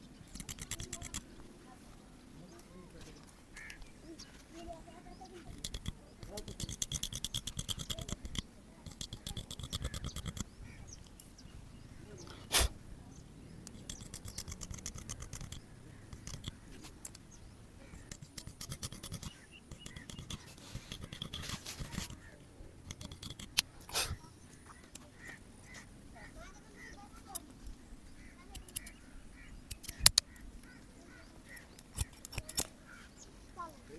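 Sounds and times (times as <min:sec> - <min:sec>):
sharp scissor clicks: 0:00.2 - 0:01.3, 0:05.4 - 0:11.3, 0:13.6 - 0:17.2, 0:17.9 - 0:22.2, 0:22.8 - 0:25.8, 0:28.5 - 0:29.0, 0:29.7 - 0:30.5, 0:31.4 - 0:32.8
scissors snipping hair: 0:00.3 - 0:01.3, 0:05.4 - 0:11.3, 0:13.6 - 0:17.2, 0:17.9 - 0:25.9, 0:28.5 - 0:29.0, 0:29.7 - 0:30.5, 0:31.4 - 0:32.9.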